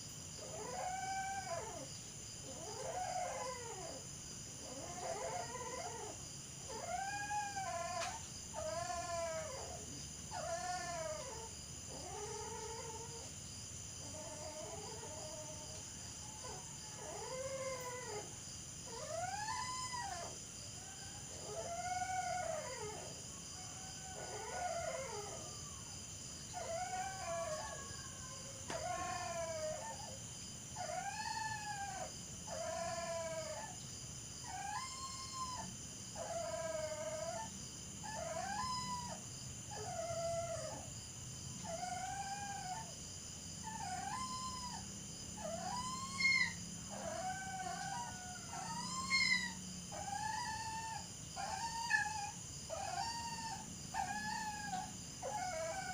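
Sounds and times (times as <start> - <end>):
dog howling: 0.4 - 1.9, 2.5 - 4.0, 4.6 - 13.3, 14.0 - 30.2, 30.8 - 33.8, 34.4 - 40.9, 41.6 - 42.9, 43.6 - 55.9.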